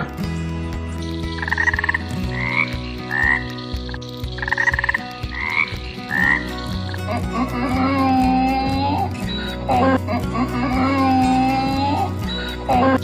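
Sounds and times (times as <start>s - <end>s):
frog croaking and chirping: 1.2s - 7.3s.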